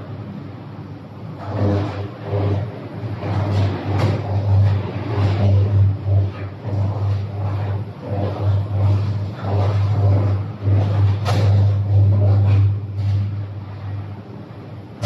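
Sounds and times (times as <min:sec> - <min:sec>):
steady low hum: 0:00.0 - 0:15.0
electric arc crackling: 0:01.3 - 0:14.2.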